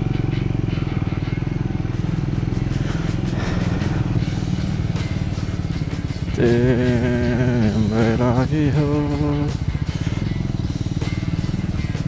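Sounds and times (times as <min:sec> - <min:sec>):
motorcycle engine running: 0:00.0 - 0:12.0
person humming or singing: 0:06.3 - 0:09.7.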